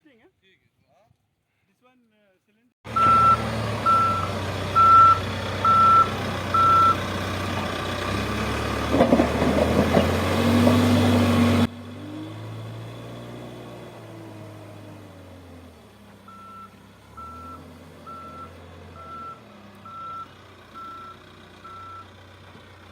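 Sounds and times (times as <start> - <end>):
reversing alarm beeping: 2.9 - 7.0, 16.3 - 22.1
diesel engine hum: 2.9 - 22.9
clattering: 8.8 - 10.2.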